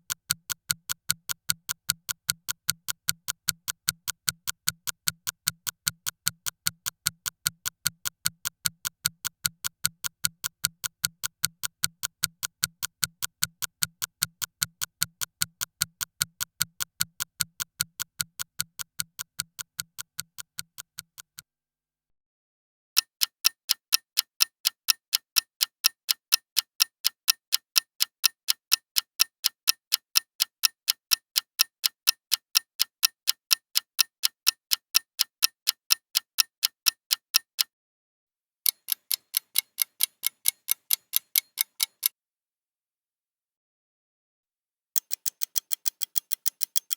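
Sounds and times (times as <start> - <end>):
clock ticking: 0.1 - 21.4, 23.0 - 37.7, 38.7 - 42.1, 45.0 - 46.9
brighter clock ticking: 23.0 - 37.7, 38.7 - 42.1, 45.0 - 46.9.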